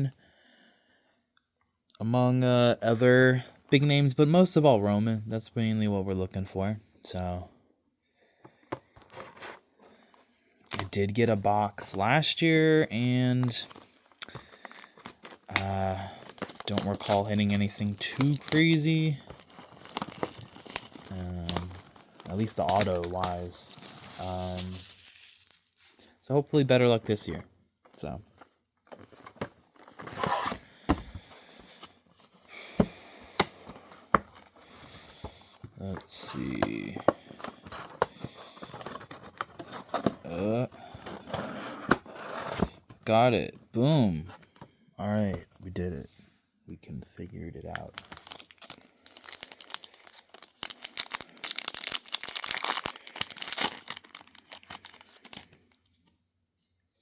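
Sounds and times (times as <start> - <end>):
cardboard packaging rustling: 8.8 - 10.1, 13.2 - 43.1, 47.7 - 56.1
foil wrapper tearing and crinkling: 14.2 - 26.2, 48.0 - 55.8.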